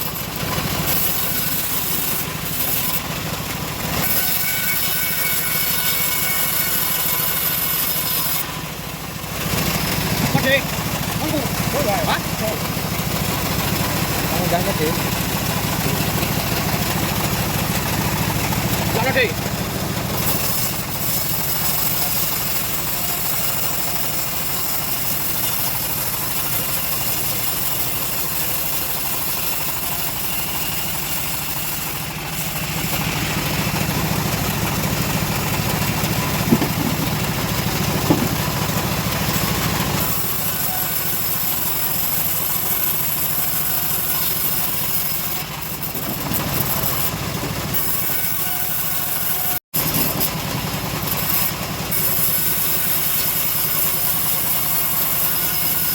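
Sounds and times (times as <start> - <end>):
bandsaw sawmill running: 0.0 - 55.9
sharp knocks: 36.4 - 37.2, 38.0 - 38.5.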